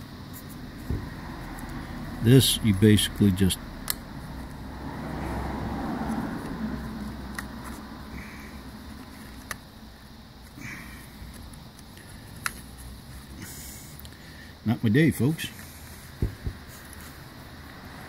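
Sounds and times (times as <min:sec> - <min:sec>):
faint steady hum: 0:00.0 - 0:18.0
plastic parts clicking and scraping: 0:11.2 - 0:12.9.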